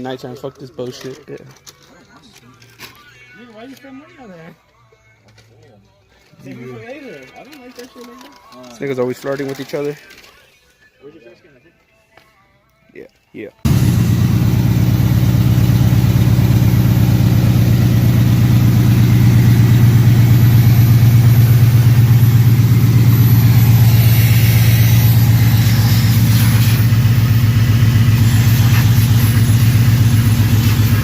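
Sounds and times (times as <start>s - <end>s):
car engine idling loud: 13.7s - 31.0s.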